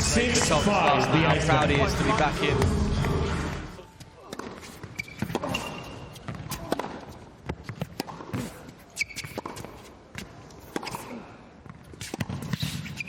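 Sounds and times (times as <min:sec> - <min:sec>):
shoe squeak: 0:04.3 - 0:06.7, 0:07.6 - 0:10.0, 0:11.9 - 0:13.0
tennis ball hits and bounces: 0:04.3 - 0:13.0.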